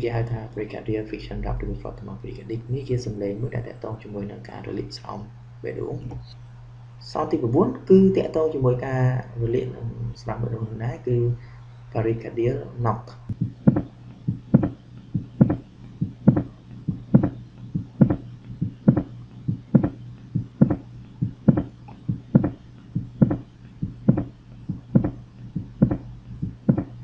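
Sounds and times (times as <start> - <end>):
steady low hum: 0.0 - 27.0
heartbeat knocking sounds: 13.3 - 27.0.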